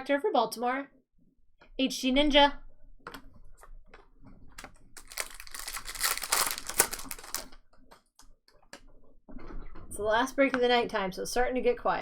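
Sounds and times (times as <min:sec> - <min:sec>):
cards clicking and tapping: 0:05.0 - 0:07.4
card pack wrapper crinkling: 0:05.0 - 0:07.5.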